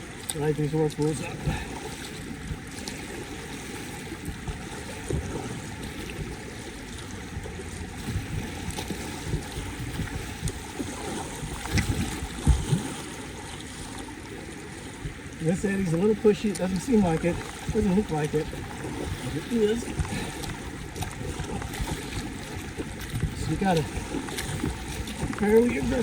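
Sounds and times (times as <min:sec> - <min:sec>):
gurgling river current: 0:00.0 - 0:26.0
paddle splashes and knocks: 0:00.0 - 0:26.0.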